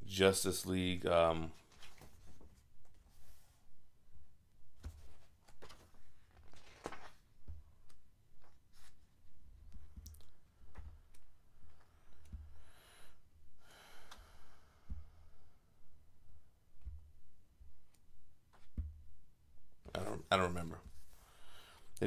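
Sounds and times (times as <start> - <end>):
book pages turning: 1.6 - 3.0, 4.8 - 7.3.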